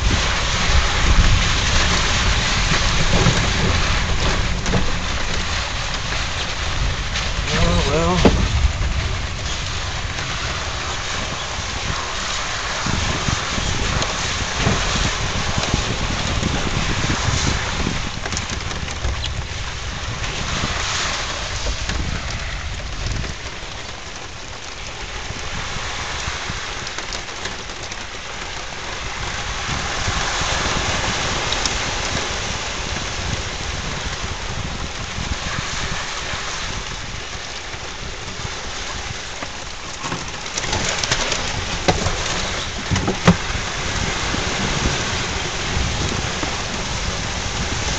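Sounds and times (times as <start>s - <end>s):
atv engine rumbling: 0.0s - 24.3s, 38.0s - 47.9s
water washing: 0.0s - 47.9s.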